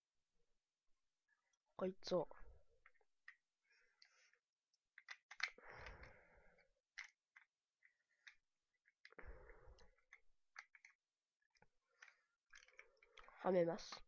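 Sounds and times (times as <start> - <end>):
small metal parts clicking: 4.0 - 14.0.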